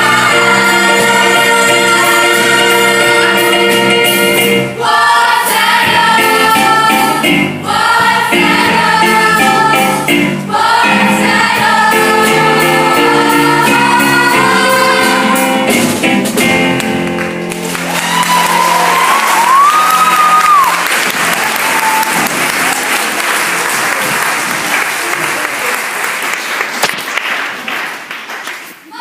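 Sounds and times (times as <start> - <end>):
group of voices singing in chorus: 0.0 - 15.7
instrumental accompaniment: 0.0 - 24.6.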